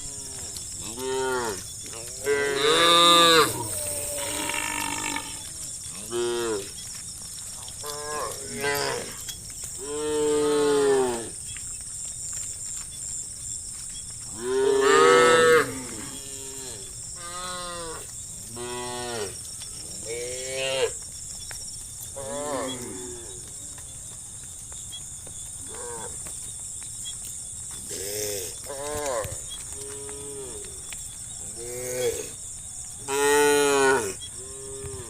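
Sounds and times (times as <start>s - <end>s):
cows mooing: 0.0s - 6.7s, 14.4s - 18.0s.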